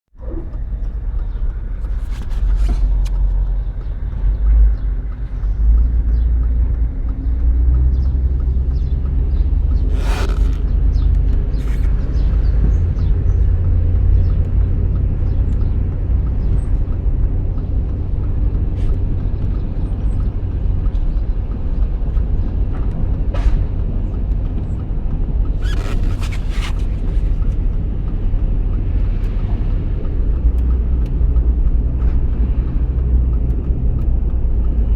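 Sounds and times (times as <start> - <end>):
car driving low rumble: 0.1 - 34.9
car trim creaks: 9.7 - 12.0, 25.5 - 27.7.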